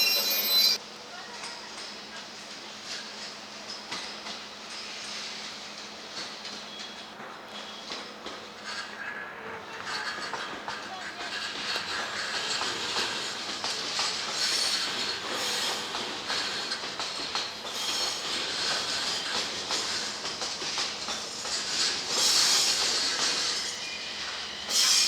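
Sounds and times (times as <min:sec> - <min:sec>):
train wheel noise: 0:00.0 - 0:25.0
wheels clacking over rail joints: 0:09.6 - 0:25.0.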